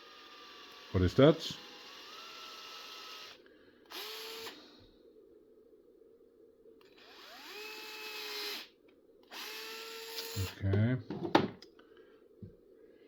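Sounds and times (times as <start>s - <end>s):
small power drill running: 0.0s - 4.6s, 6.8s - 10.6s.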